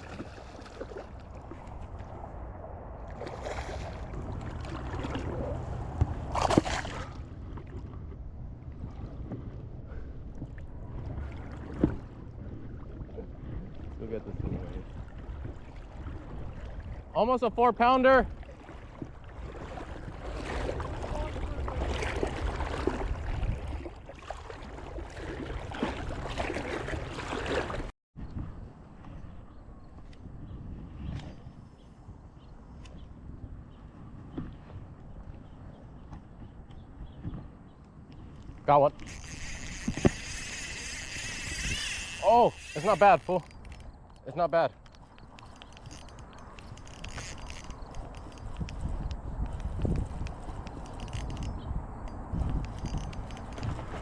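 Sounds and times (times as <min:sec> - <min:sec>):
water sloshing and splashing: 0:00.0 - 0:02.4, 0:03.0 - 0:17.2, 0:18.1 - 0:27.9, 0:52.2 - 0:54.0
wind on microphone: 0:00.0 - 0:17.2, 0:18.2 - 0:44.2, 0:44.9 - 0:54.0.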